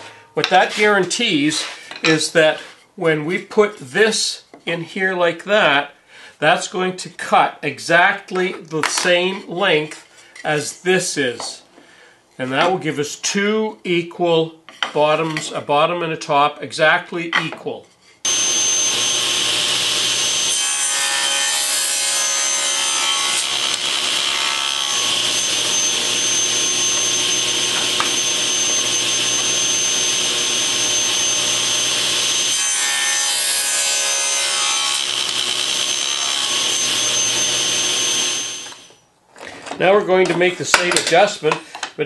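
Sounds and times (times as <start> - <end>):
table saw cutting wood: 18.2 - 39.0.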